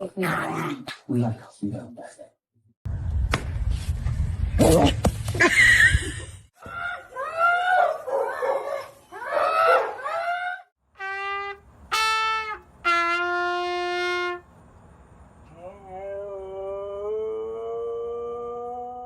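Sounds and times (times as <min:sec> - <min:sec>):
held horn-like notes: 0:11.0 - 0:14.5.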